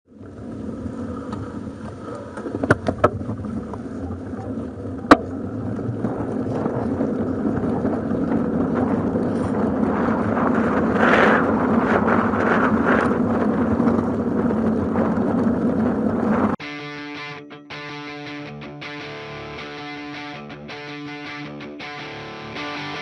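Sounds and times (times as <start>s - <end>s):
bicycle tyres humming: 0.1s - 16.6s.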